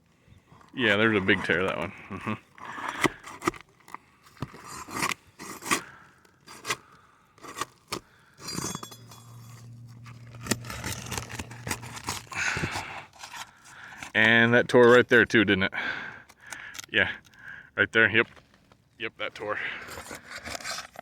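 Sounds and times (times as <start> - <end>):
shingles scraping and tearing: 0.5 - 15.0, 19.5 - 21.0
low steady hum: 6.9 - 14.1.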